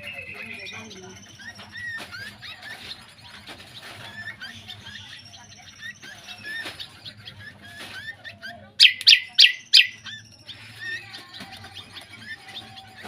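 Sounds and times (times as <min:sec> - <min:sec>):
faint bird chirps and twitters: 0:00.0 - 0:13.0
songbird sharp downward calls: 0:08.8 - 0:10.2.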